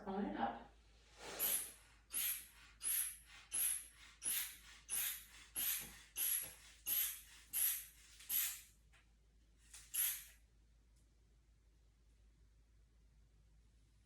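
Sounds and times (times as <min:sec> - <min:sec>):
rubber bulb squeezes hissing air: 0:01.2 - 0:08.7, 0:09.8 - 0:10.3.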